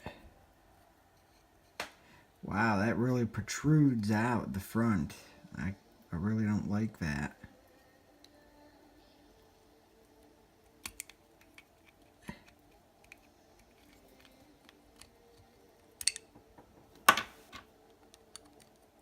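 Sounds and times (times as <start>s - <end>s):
pistol parts clicking: 10.8s - 16.5s, 17.1s - 18.9s.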